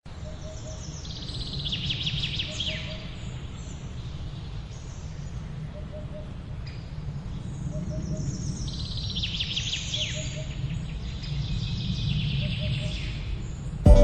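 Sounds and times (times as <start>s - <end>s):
birds chirping and twittering: 0.1s - 13.8s.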